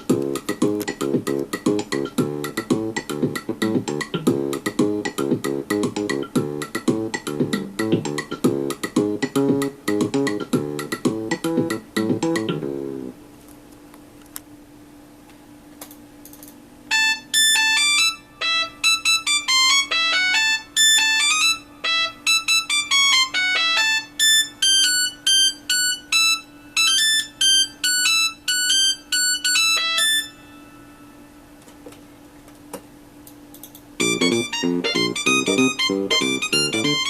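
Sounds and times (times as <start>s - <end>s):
steady low hum: 0.0s - 14.2s, 31.0s - 37.0s
synth ringtone melody: 34.0s - 37.0s.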